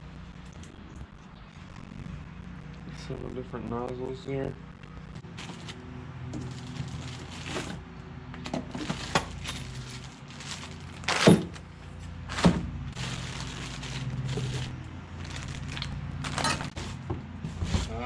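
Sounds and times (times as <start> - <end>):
low hum: 0.0 - 8.4, 9.0 - 16.8
plastic packaging rustling: 6.4 - 7.8, 8.7 - 11.6, 12.3 - 16.8.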